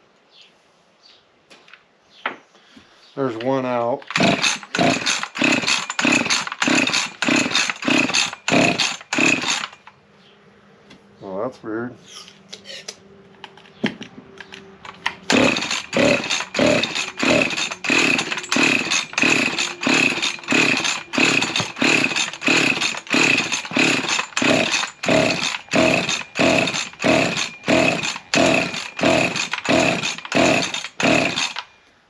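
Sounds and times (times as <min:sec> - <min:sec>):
chainsaw pull-start whirring: 0:04.0 - 0:10.0, 0:14.4 - 0:31.7.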